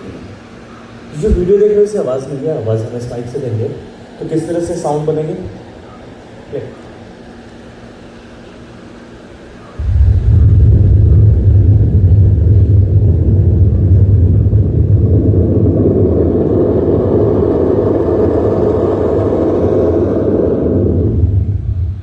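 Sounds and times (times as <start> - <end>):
low engine-like rumble: 9.7 - 22.0
high rushing sound: 9.8 - 22.0.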